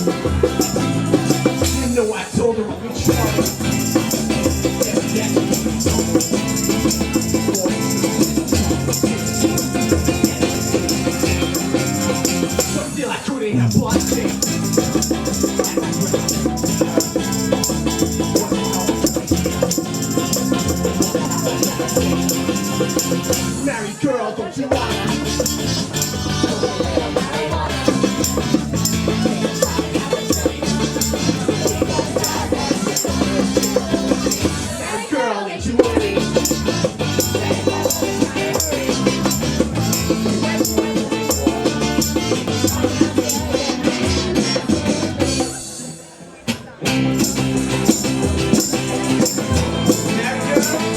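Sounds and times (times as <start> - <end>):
bass guitar and drums band: 0.0 - 2.0, 2.8 - 13.0, 13.6 - 23.7, 24.7 - 34.9, 35.8 - 45.9, 46.5 - 50.9
shaker rhythm: 0.0 - 2.1, 3.0 - 13.0, 13.6 - 23.8, 24.7 - 34.9, 35.8 - 45.9, 46.7 - 50.9
drum and cymbal hits: 13.6 - 23.7.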